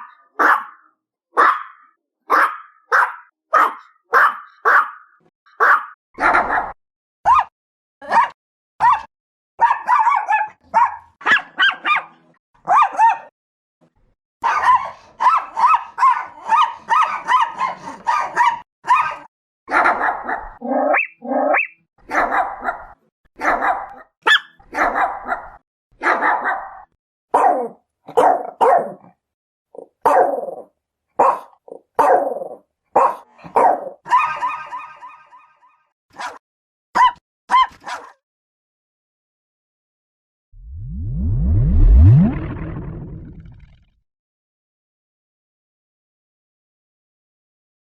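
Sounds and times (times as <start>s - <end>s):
small dog yapping: 23.4s - 25.4s, 36.2s - 36.4s, 37.0s - 38.2s.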